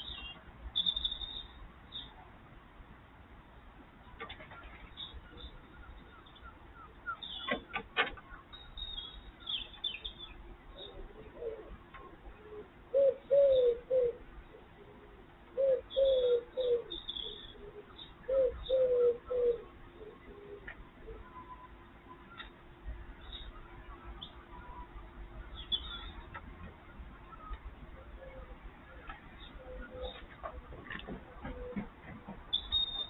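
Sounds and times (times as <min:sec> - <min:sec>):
small birds chirping: 0:00.0 - 0:02.3, 0:04.0 - 0:33.0
dove cooing: 0:10.8 - 0:21.6, 0:27.3 - 0:33.0.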